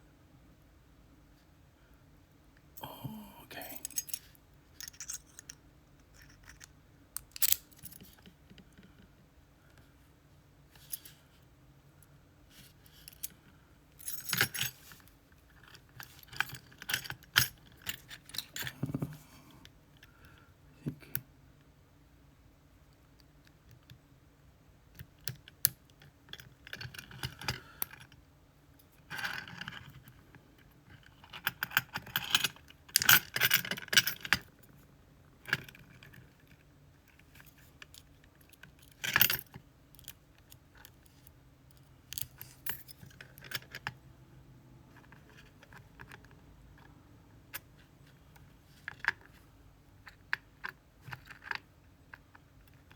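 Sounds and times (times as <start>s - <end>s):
metal lock parts clicking: 6.2s - 8.3s.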